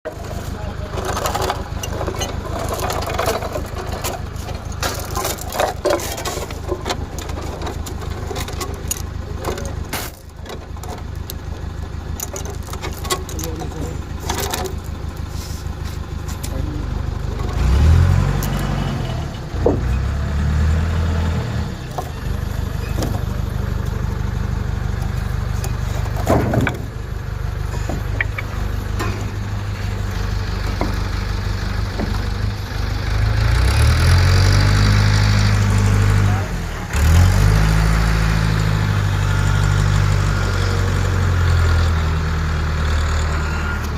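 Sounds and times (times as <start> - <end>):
knocks and clatter: 0.1 - 15.0, 19.6 - 20.1, 25.1 - 27.0, 27.6 - 32.6
crane engine running: 0.1 - 43.9.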